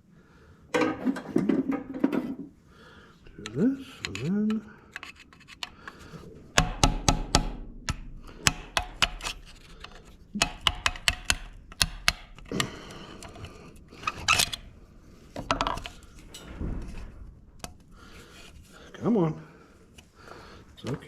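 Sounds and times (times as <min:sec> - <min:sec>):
hammer striking screwdriver on metal: 0:06.6 - 0:12.6.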